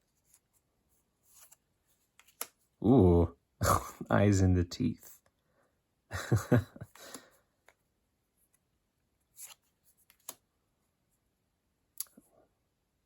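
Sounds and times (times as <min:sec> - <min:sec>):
cards rustling and flicking: 0:01.2 - 0:02.8, 0:09.2 - 0:10.5.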